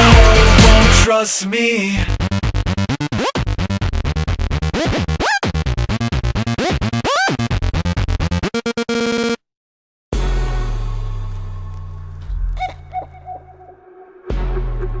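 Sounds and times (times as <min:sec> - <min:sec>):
chopped electronic synth and bass: 0:02.1 - 0:09.4, 0:10.2 - 0:15.0
scratch-like swooping pitch glides: 0:10.2 - 0:14.3.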